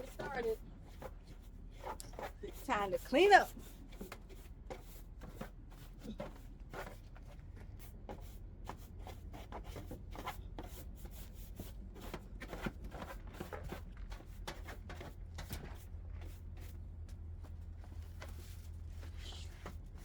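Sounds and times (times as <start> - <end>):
low steady hum: 10.5 - 20.0
broom sweeping floor: 18.0 - 20.0.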